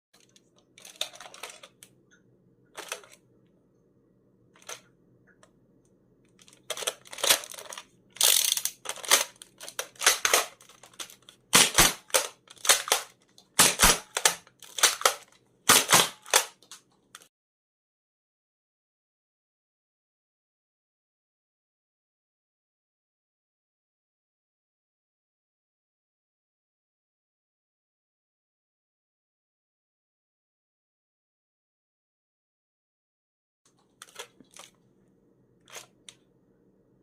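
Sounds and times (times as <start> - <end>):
toy blaster clacks and pops: 2.8 - 3.2, 6.4 - 17.3, 34.0 - 34.7.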